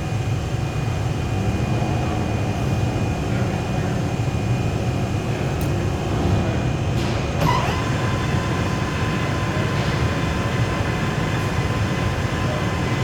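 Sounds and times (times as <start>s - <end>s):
lathe running: 7.4s - 13.0s.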